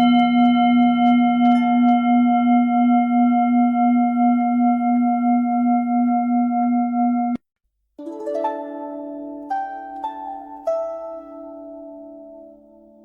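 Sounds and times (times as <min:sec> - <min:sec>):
singing bowl ringing tone: 0:00.0 - 0:07.4.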